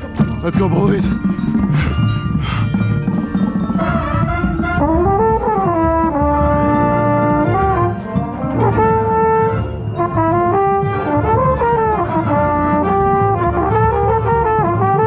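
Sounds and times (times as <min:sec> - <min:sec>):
mellophone close to microphone: 0:00.0 - 0:03.1
brass line playing: 0:03.7 - 0:15.0.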